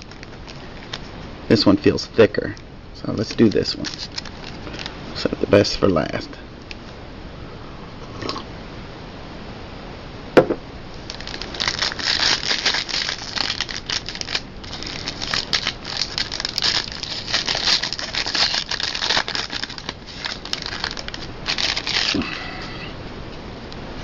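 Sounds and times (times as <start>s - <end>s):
wrapper tearing and crinkling: 0.0s - 1.2s, 3.2s - 4.9s, 10.9s - 22.3s.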